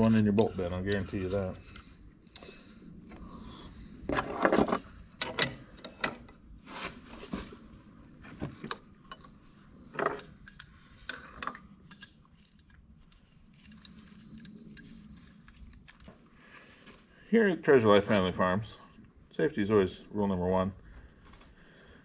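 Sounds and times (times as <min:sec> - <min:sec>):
small metal parts clinking: 0:10.0 - 0:16.4.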